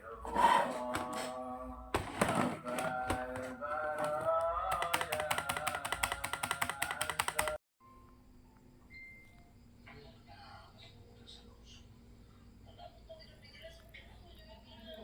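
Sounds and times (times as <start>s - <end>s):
fast clicking beat: 4.0s - 7.6s.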